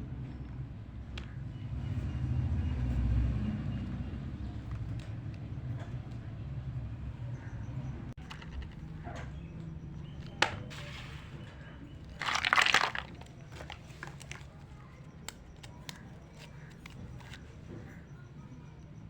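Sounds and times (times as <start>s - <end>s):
plastic packaging crinkling: 12.1s - 14.7s.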